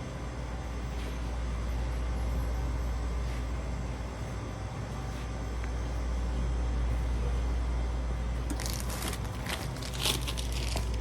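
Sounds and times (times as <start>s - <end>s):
bags crinkling and rustling: 8.5s - 11.0s.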